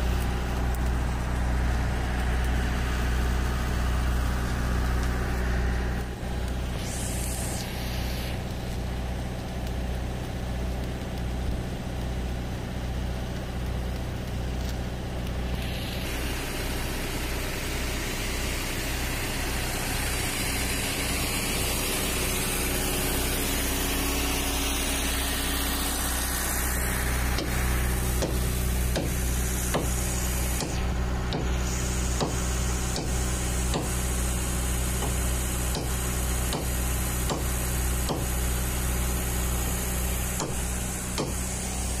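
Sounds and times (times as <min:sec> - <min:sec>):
engine droning: 0:00.0 - 0:42.0
loud hissing: 0:02.8 - 0:09.2, 0:15.4 - 0:42.0.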